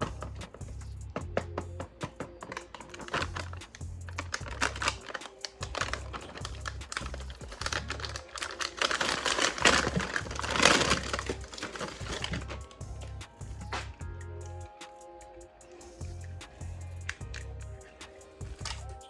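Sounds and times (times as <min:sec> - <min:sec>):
plastic toy parts clicking: 0:01.6 - 0:12.6.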